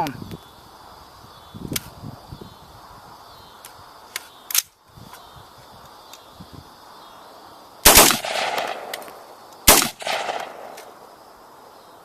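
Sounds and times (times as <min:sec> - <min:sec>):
rifle gunshots: 0:07.8 - 0:10.9
rolling gunshot echo: 0:07.9 - 0:09.1, 0:09.7 - 0:10.9.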